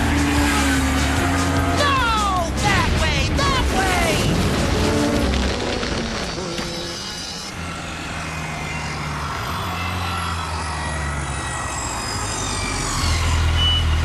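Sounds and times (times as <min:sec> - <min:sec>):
high whines gliding downward: 0:03.6 - 0:13.8.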